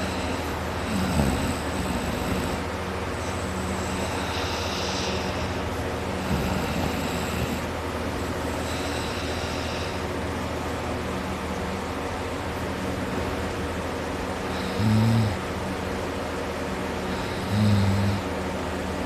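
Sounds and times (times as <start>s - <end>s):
person snoring: 0.0s - 5.6s, 6.2s - 10.0s, 14.5s - 15.4s, 17.1s - 18.3s
steady low hum: 0.0s - 19.0s
hissing exhale: 3.2s - 7.6s.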